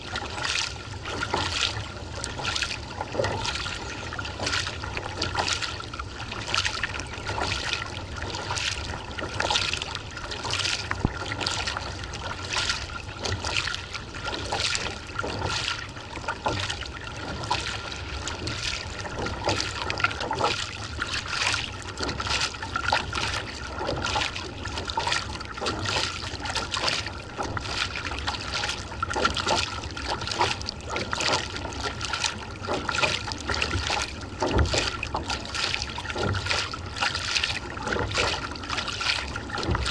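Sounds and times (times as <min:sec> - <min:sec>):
paddle splashing in water: 0:00.0 - 0:39.9.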